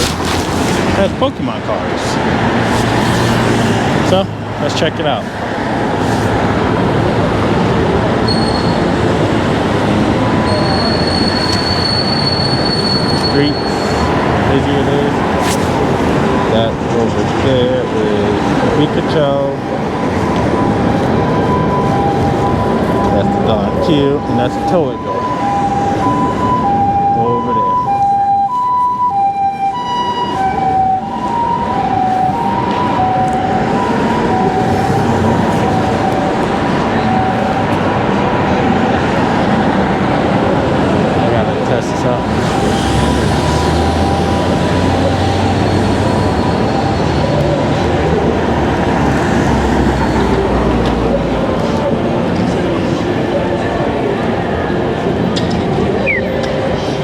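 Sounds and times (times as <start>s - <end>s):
city din: 0.0s - 57.0s
ambulance two-tone siren: 3.4s - 57.0s
train wheels squealing on rail: 8.2s - 9.3s, 10.3s - 14.6s, 42.4s - 48.2s, 56.0s - 57.0s.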